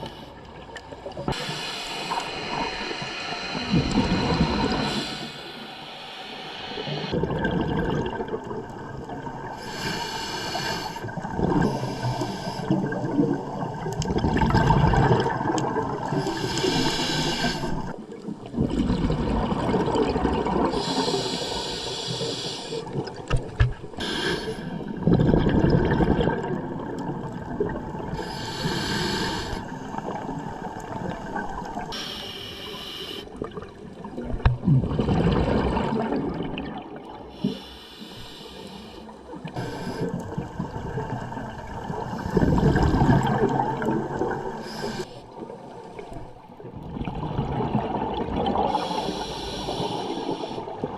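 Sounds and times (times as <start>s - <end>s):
hissing inhale through regulator: 0.0s - 0.6s, 1.3s - 7.2s, 9.5s - 13.4s, 16.0s - 18.0s, 20.7s - 23.1s, 23.9s - 25.1s, 28.1s - 33.5s, 37.3s - 40.9s, 41.9s - 45.5s, 48.6s - 50.9s
gurgling exhaled bubbles: 6.8s - 32.0s, 33.3s - 37.6s, 39.2s - 50.9s.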